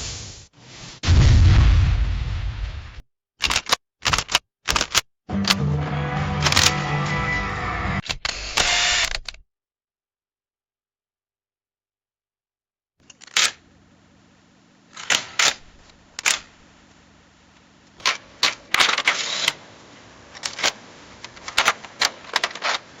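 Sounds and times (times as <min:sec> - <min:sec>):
camera shutter clicks: 0:03.4 - 0:05.6, 0:06.4 - 0:06.8, 0:08.1 - 0:09.4, 0:18.0 - 0:19.6.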